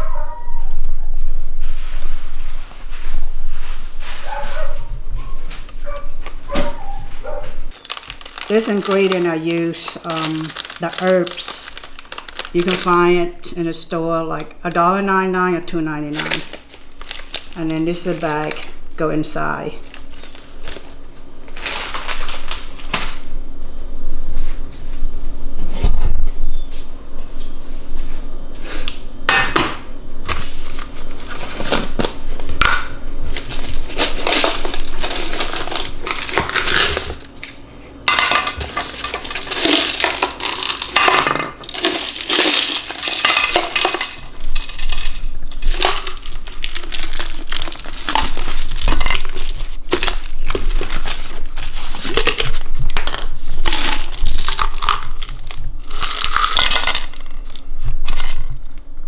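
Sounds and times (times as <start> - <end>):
crinkling and crushing: 1.6 - 14.8, 16.0 - 23.4, 28.8 - 58.9
pots and utensils clattering: 32.6 - 37.2, 38.1 - 55.0.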